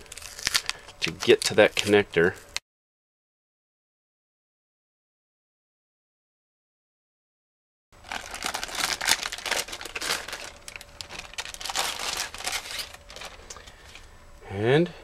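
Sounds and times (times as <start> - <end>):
plastic crinkling: 0.0 - 2.6, 8.0 - 14.1.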